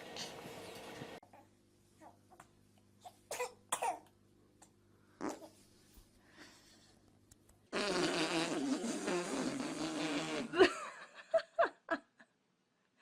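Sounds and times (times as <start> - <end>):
rasping fart noise: 7.7 - 10.6.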